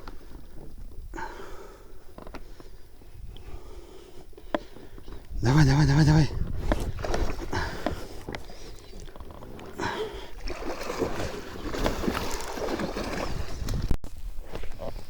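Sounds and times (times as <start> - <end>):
water splashing: 6.6 - 13.9.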